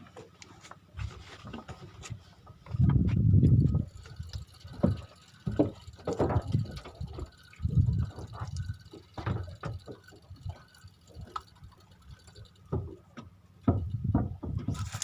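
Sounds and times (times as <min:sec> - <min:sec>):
water splashing and sloshing: 0:03.6 - 0:15.0
sharp knocks: 0:13.6 - 0:15.0.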